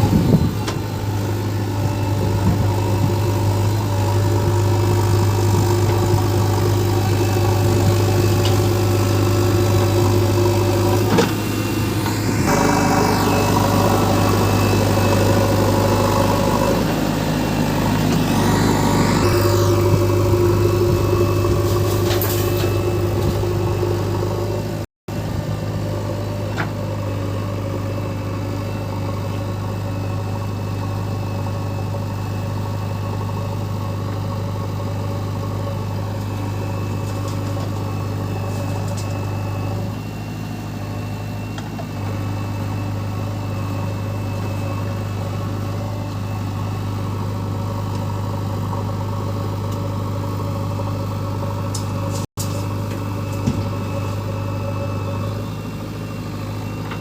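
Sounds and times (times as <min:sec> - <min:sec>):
diesel engine idling: 0:00.0 - 0:57.0.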